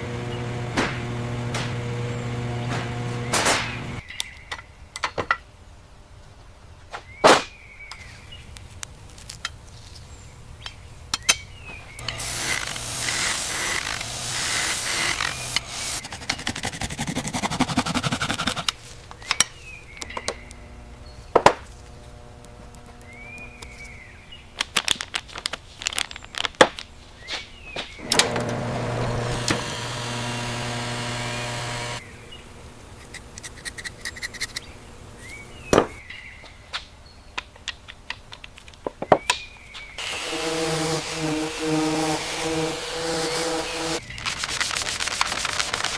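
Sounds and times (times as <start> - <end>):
steady machine hum: 0.0 - 4.0, 12.0 - 16.3, 20.0 - 24.2, 28.0 - 33.0.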